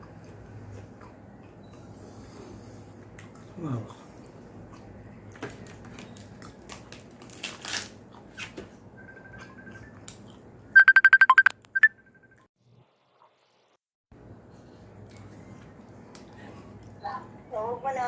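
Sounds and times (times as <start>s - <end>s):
short high electronic beeps: 10.8s - 12.0s.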